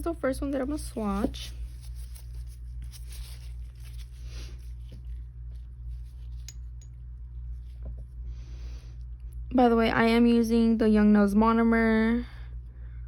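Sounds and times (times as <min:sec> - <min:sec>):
scratching and handling noises: 0:00.0 - 0:08.2
steady low hum: 0:00.0 - 0:13.0.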